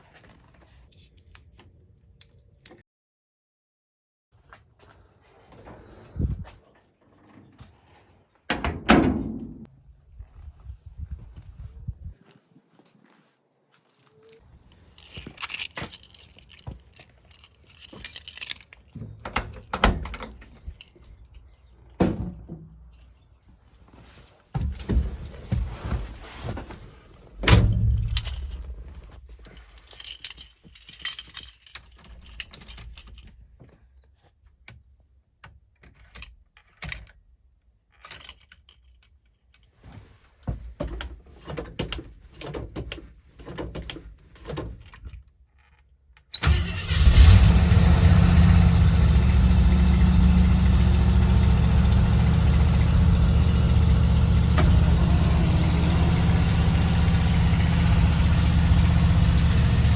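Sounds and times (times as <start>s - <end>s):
light clicks and rattles: 14.6s - 22.0s, 27.5s - 33.9s
car engine starting and idling: 46.4s - 59.9s.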